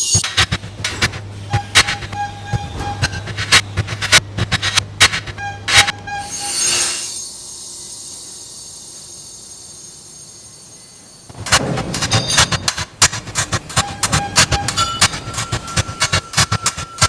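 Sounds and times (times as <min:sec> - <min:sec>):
rapid clatter of clicks and knocks: 0:00.2 - 0:06.0, 0:11.3 - 0:17.0.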